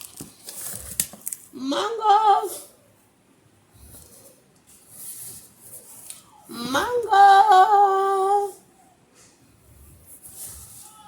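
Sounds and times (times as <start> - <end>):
soft rustling: 9.2 - 11.0.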